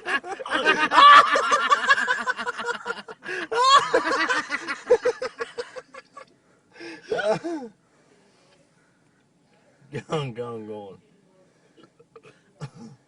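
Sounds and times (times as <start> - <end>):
man laughing: 0.0 - 6.0.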